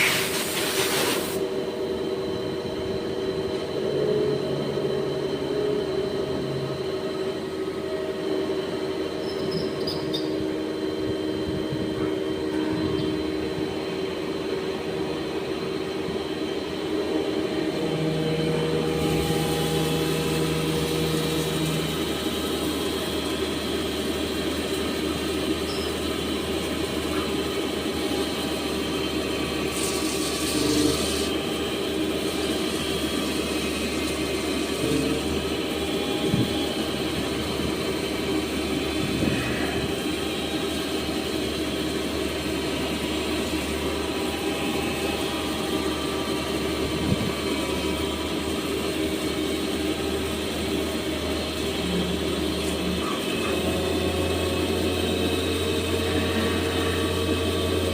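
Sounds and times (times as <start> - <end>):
brief hiss: 0.0 - 1.4
lathe machine hum: 0.0 - 57.9.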